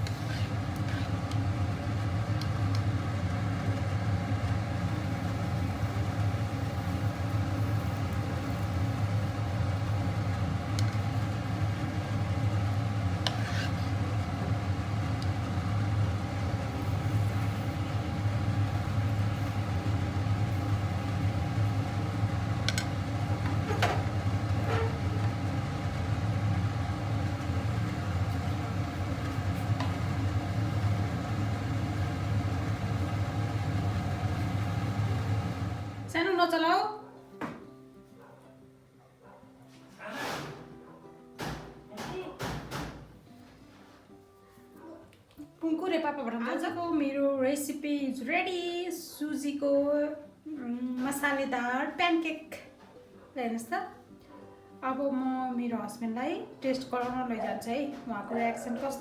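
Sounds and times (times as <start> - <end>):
steady machine hum: 0.0 - 36.3.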